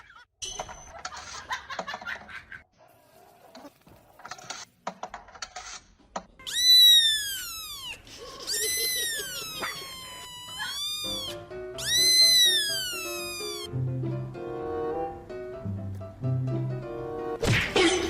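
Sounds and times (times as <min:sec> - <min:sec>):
cat meowing loudly: 0:06.5 - 0:13.7
background music: 0:11.2 - 0:18.0.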